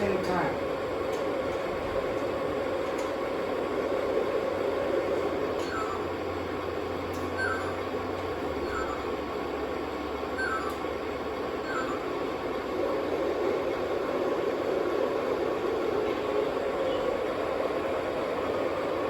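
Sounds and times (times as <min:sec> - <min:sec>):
model trains rumbling: 0:00.0 - 0:07.2.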